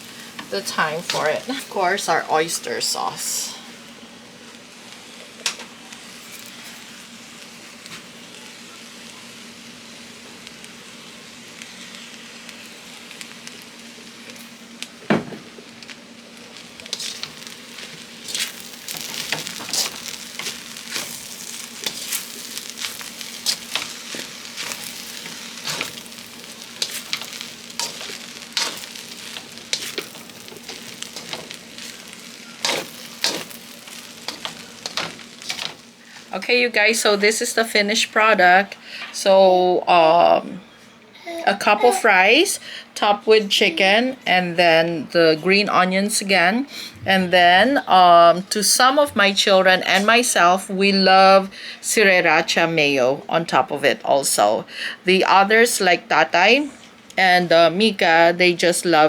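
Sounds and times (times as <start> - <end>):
rice sizzling in a pan: 0.0 - 40.1.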